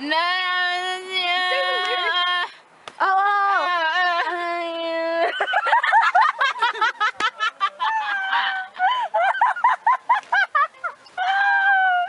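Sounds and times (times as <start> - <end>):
girl giggling: 1.5 - 2.3, 5.3 - 12.0.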